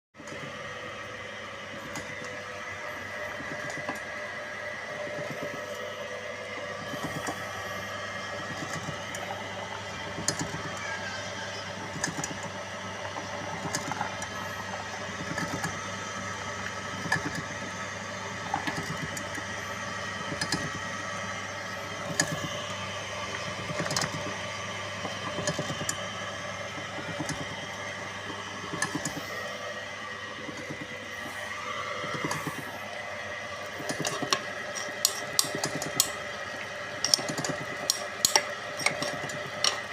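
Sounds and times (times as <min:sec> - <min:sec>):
pellet machine running: 0:00.2 - 0:39.9.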